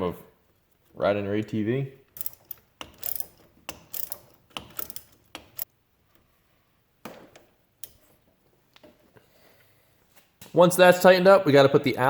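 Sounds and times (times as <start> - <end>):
ratchet wrench clicking: 2.2 - 5.7.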